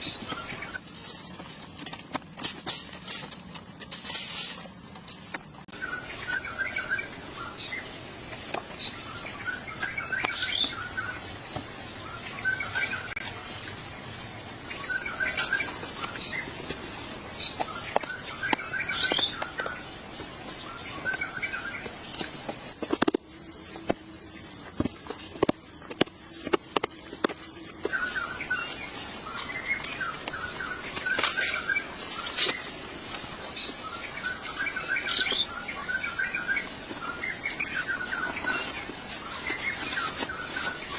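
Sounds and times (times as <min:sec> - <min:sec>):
birds chirping: 0:00.0 - 0:40.9
outdoor background noise: 0:00.0 - 0:40.9.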